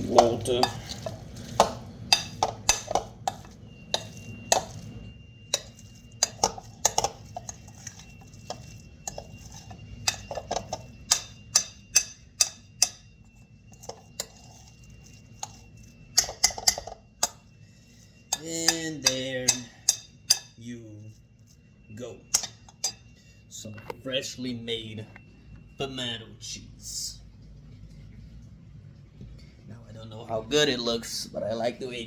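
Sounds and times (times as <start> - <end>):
utensil clinking against bowl: 0.0 - 17.5, 18.3 - 20.6, 22.2 - 23.2.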